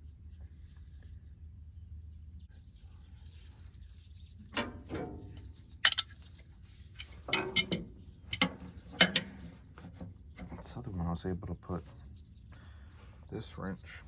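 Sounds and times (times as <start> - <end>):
low steady hum: 4.2 - 10.8
wrench clinking on metal fittings: 4.6 - 6.2, 7.0 - 9.5.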